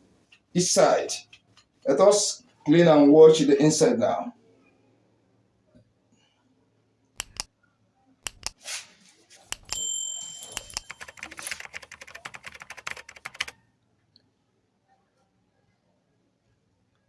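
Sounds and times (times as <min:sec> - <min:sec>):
sharp clicks and knocks: 0:07.2 - 0:07.5, 0:08.2 - 0:08.6, 0:09.5 - 0:09.8.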